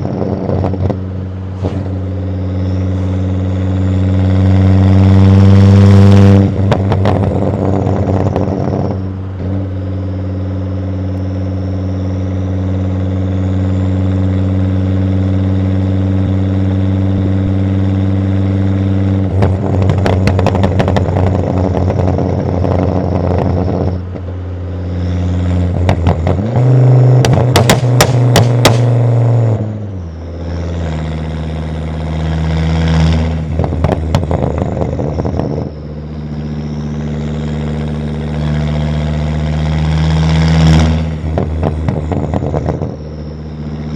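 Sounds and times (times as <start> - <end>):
exhaust crackling pops and bangs: 0.0 - 1.0, 6.4 - 9.0, 19.2 - 24.4, 25.7 - 29.4, 33.2 - 35.6, 40.7 - 43.0
car engine droning: 0.0 - 43.9.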